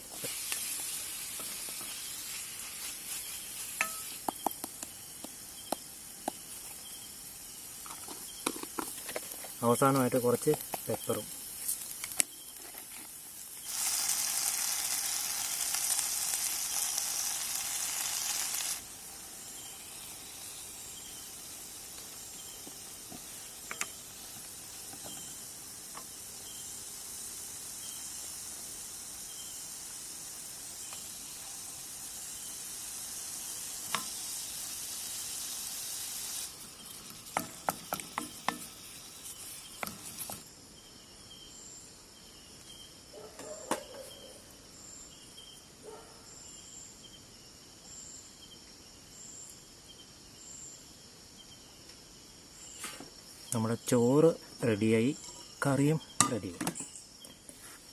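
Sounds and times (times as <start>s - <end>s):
food sizzling in a pan: 0.0s - 8.9s, 9.5s - 40.5s
crickets chirping: 0.0s - 57.9s
stirring clicks and scrapes in pan: 0.2s - 5.4s, 23.1s - 25.2s, 36.8s - 40.4s.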